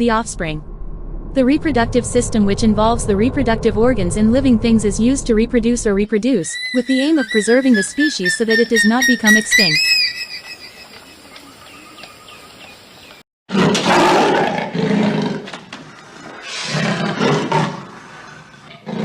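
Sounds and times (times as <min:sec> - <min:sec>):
faint bird chirps: 0:06.4 - 0:13.2.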